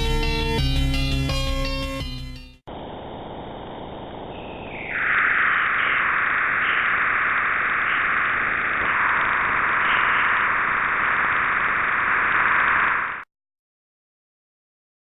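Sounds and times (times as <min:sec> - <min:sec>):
high static hiss: 0:02.7 - 0:13.2.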